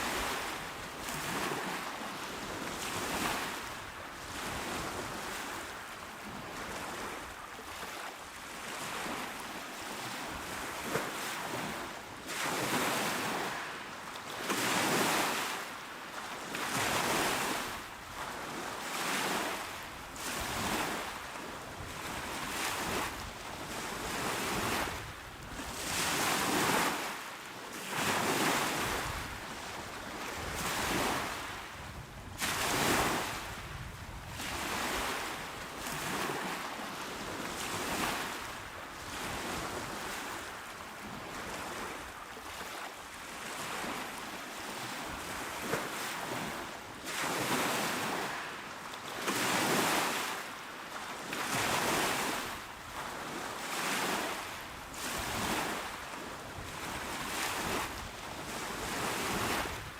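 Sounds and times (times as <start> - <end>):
small waves washing onto shore: 0.0 - 59.9.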